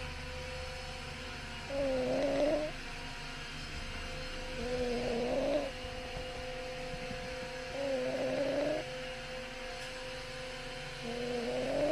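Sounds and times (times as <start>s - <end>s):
steady low hum: 0.0s - 11.9s
whistling snore: 1.7s - 2.7s, 4.6s - 5.7s, 7.7s - 8.9s, 11.0s - 11.9s.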